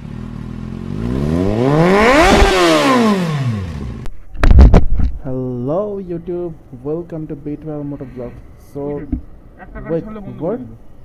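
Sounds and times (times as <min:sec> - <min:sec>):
motorcycle engine revving: 0:00.0 - 0:04.1.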